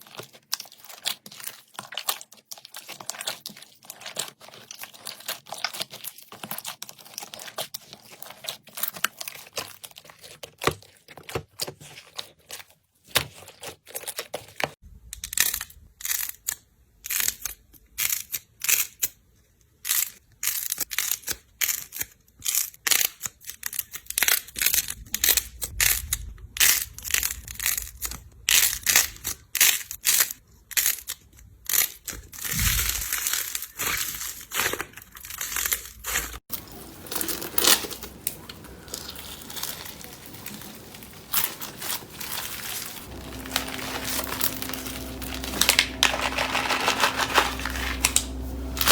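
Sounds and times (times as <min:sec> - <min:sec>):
slime crackling and popping: 0:30.8 - 0:48.9.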